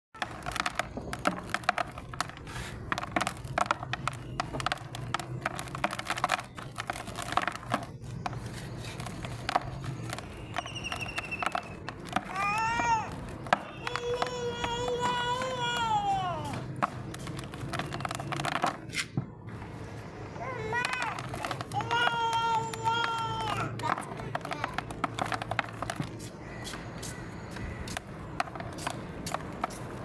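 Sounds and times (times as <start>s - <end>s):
mud crumbling and crackling: 0.2s - 19.0s, 20.9s - 30.0s
high whistle-like tone: 10.6s - 11.4s.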